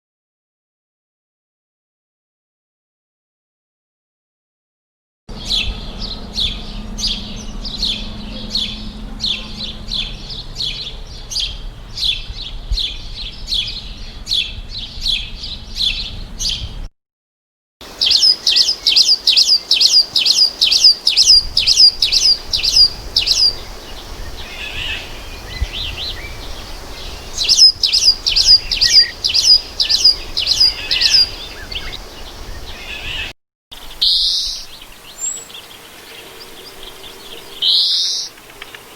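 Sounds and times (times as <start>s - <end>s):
soft bird chirps: 17.9s - 33.3s, 33.9s - 38.9s
bird whistling falling notes: 18.0s - 33.3s.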